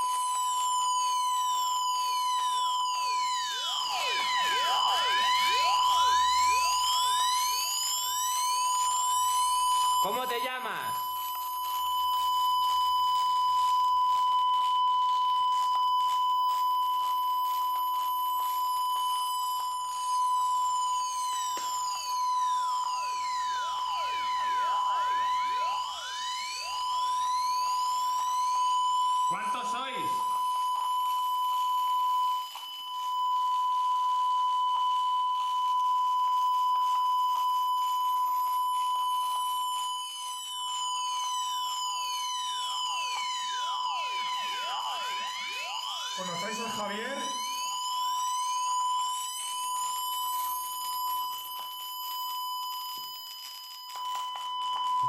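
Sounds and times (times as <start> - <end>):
steady pure test tone beep: 0.0 - 55.0
tone gliding down in pitch: 2.8 - 8.9.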